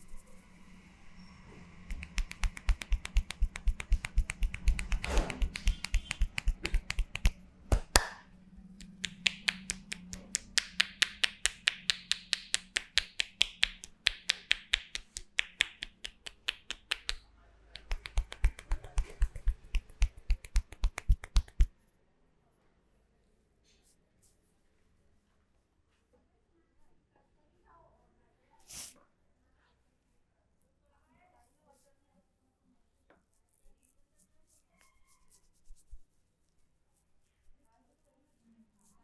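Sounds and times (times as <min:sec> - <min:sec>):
hands tapping a head: 0:01.9 - 0:08.2, 0:08.8 - 0:17.2, 0:17.8 - 0:21.7.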